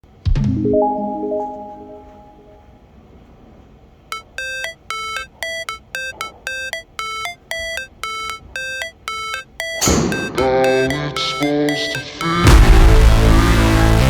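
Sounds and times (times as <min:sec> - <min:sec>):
beeping synth melody: 0:04.1 - 0:13.3.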